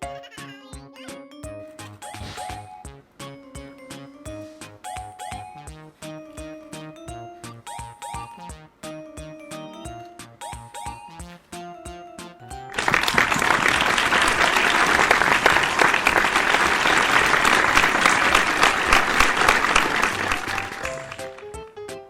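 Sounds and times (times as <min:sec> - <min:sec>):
background music: 0:00.0 - 0:15.2, 0:16.4 - 0:22.0
applause: 0:12.7 - 0:21.6.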